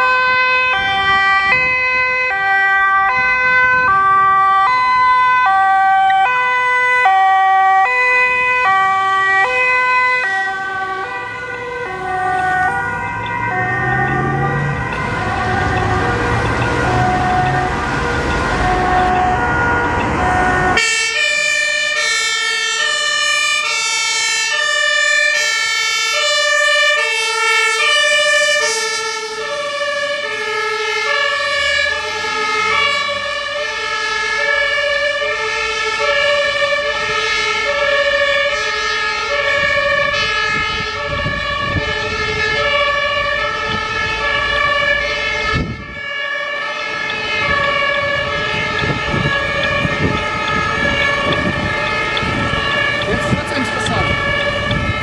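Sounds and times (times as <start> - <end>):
two-tone fire sirens: 0.0 - 55.0
vehicle engines running: 7.7 - 21.6, 29.2 - 55.0.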